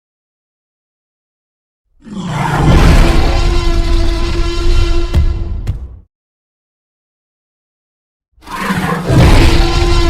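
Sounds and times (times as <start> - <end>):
deep dinosaur roar: 2.0 - 4.2, 8.4 - 10.0.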